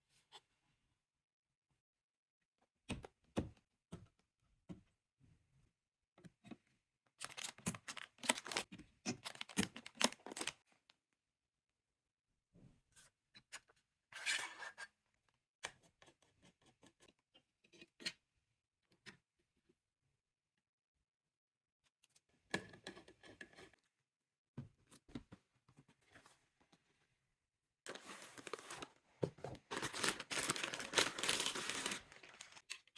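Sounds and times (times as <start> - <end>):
packaging rustling: 7.2 - 10.6, 27.9 - 29.0, 29.6 - 32.7.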